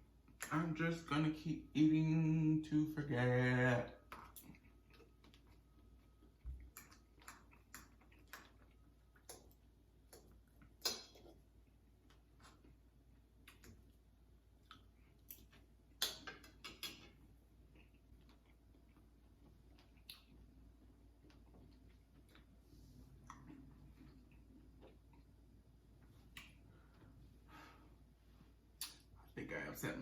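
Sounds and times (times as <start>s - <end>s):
soft eating clicks and taps: 4.0s - 22.6s, 23.2s - 27.2s, 28.8s - 29.1s.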